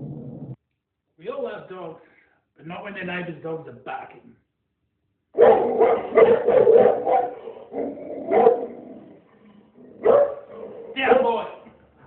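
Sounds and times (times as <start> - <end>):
dog barking: 5.4 - 8.8, 10.0 - 11.4.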